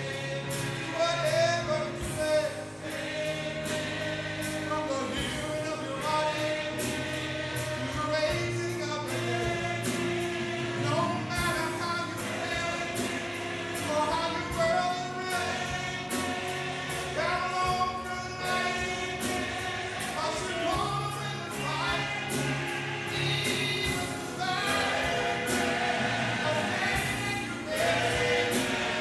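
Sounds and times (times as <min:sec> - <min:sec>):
choir singing gospel song: 0:00.0 - 0:29.0
sharp percussion beat: 0:00.0 - 0:29.0.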